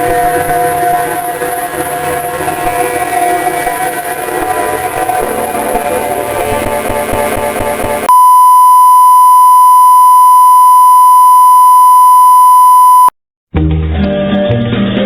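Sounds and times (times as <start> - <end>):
harsh mix of tones and noise: 0.0 - 8.2
loud distorted electronic tone: 0.0 - 8.6.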